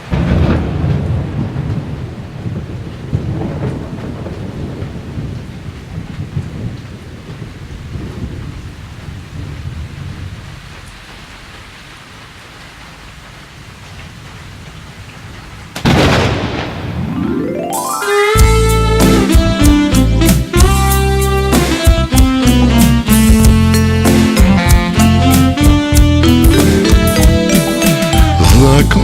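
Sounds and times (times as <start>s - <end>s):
low rolling thunder: 0.0s - 11.4s, 13.0s - 17.4s
steady rain: 0.0s - 29.0s
loud crash: 15.8s - 17.3s
rising sweep: 17.0s - 20.4s.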